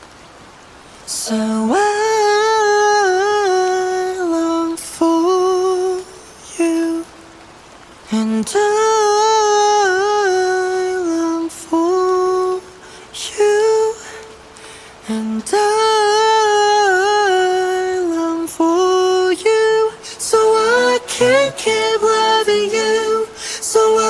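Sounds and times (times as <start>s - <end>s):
man singing unaccompanied: 1.1s - 7.2s, 8.1s - 14.4s, 15.0s - 24.0s
breaths: 12.8s - 13.2s, 14.0s - 15.2s, 20.0s - 20.3s, 23.3s - 23.8s.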